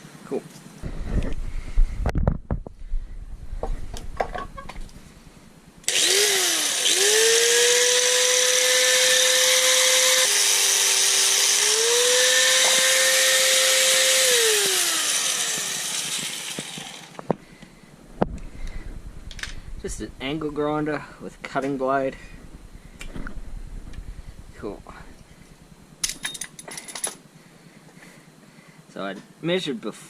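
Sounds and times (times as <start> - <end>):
angle grinder motor: 5.8 - 17.3.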